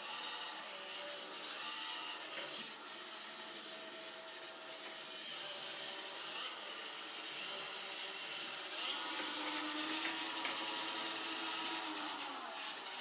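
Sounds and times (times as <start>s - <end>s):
motor whine: 0.0s - 13.0s
robot vacuum running: 0.0s - 13.0s.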